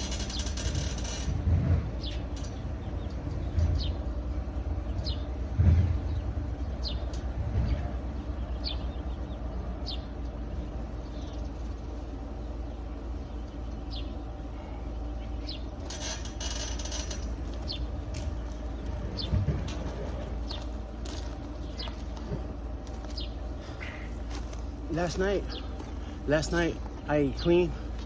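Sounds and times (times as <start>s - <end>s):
small birds chirping: 0.0s - 28.0s
steady low rumble: 0.0s - 28.0s
dull low thumps: 1.3s - 11.2s.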